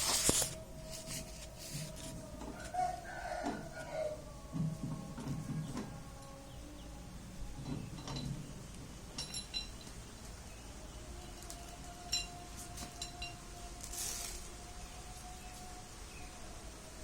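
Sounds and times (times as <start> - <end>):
metal tools clinking: 9.2 - 10.0, 12.0 - 13.4
faint steady tone: 9.2 - 17.0.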